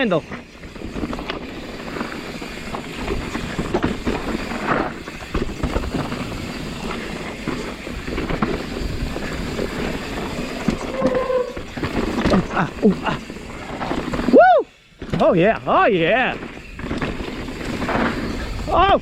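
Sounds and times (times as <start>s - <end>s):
bike rattling: 0.0s - 19.0s
tyres rumbling over dirt and rocks: 0.0s - 19.0s
brief squeal: 10.8s - 11.6s.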